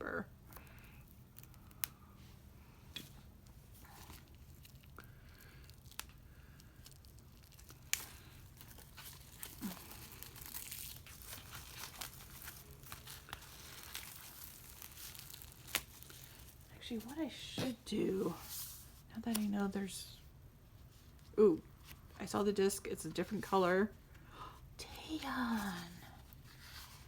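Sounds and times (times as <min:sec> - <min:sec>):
packaging being torn and crinkled: 0:03.9 - 0:17.1.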